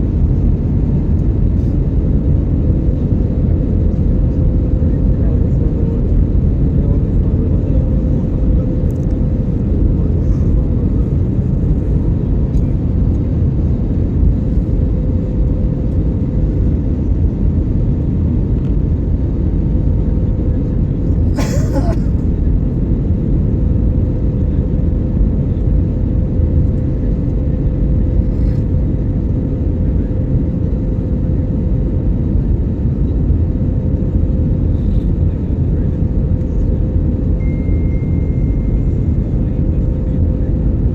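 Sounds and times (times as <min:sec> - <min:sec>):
airliner engines rumbling: 0:00.0 - 0:40.9
steady hum: 0:21.0 - 0:22.5.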